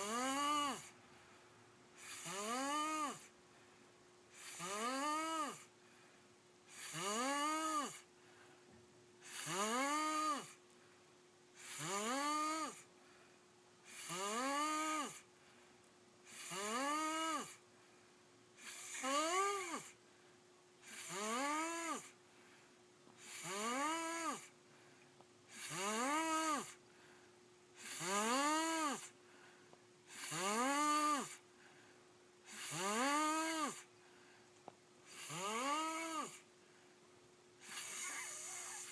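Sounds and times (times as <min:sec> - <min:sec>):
boy snoring: 0:00.0 - 0:01.0, 0:02.0 - 0:03.3, 0:04.3 - 0:05.7, 0:06.7 - 0:08.1, 0:09.2 - 0:10.6, 0:11.6 - 0:12.9, 0:13.9 - 0:15.2, 0:16.3 - 0:17.6, 0:18.6 - 0:20.0, 0:20.8 - 0:22.2, 0:23.2 - 0:24.5, 0:25.5 - 0:26.8, 0:27.8 - 0:29.2, 0:30.1 - 0:31.4, 0:32.5 - 0:33.9, 0:35.1 - 0:36.4, 0:37.6 - 0:38.9.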